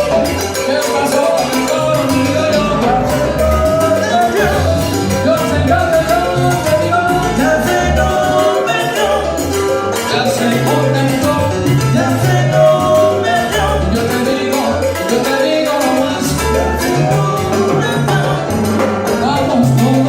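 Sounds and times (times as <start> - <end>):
bass line: 0.0 - 20.0
salsa band playing: 0.0 - 20.0
steady percussion: 0.0 - 20.0.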